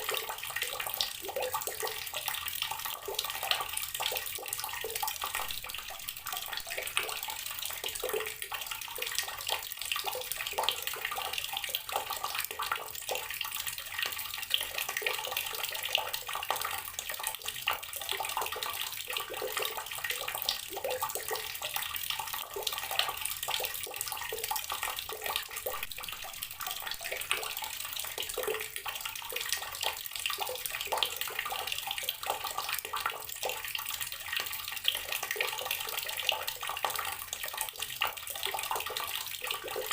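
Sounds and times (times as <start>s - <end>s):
tap water pouring into water: 0.0s - 39.9s.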